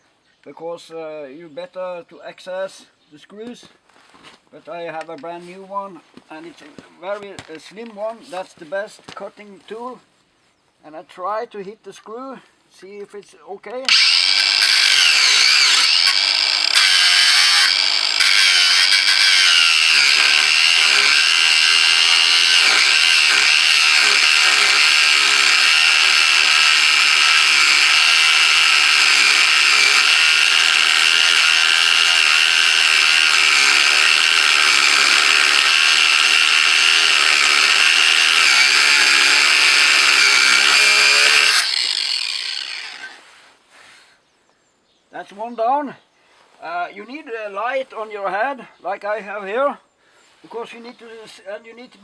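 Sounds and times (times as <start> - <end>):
angle grinder cutting steel: 13.9 - 43.2.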